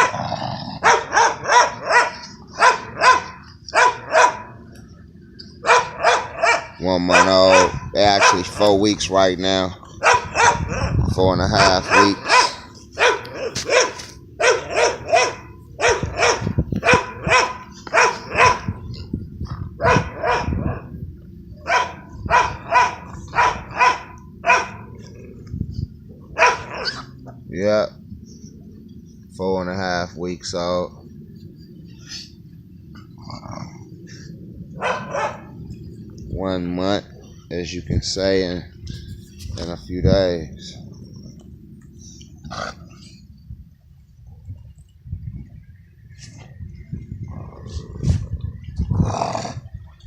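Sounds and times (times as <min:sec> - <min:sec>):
dog barking: 0:00.0 - 0:00.2, 0:00.8 - 0:04.6, 0:05.6 - 0:08.7, 0:10.0 - 0:11.0, 0:11.8 - 0:18.8, 0:19.8 - 0:20.9, 0:21.6 - 0:24.9, 0:26.4 - 0:27.1, 0:34.8 - 0:35.5.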